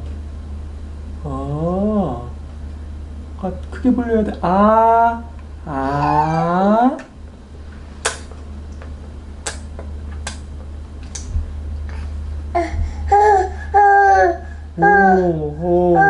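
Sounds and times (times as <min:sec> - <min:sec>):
steady low hum: 0:00.0 - 0:16.0
baby cooing and babbling: 0:12.6 - 0:16.0.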